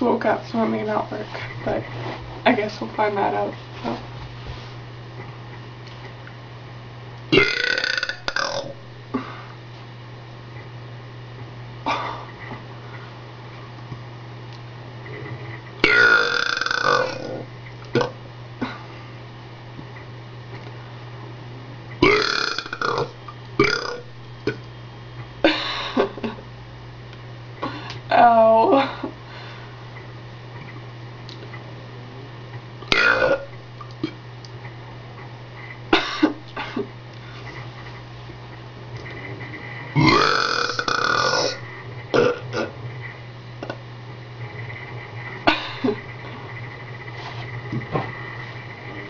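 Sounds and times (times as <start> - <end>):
long loud burp: 7.3 - 8.8, 15.8 - 17.4, 22.0 - 24.6, 32.9 - 33.5, 40.0 - 42.8.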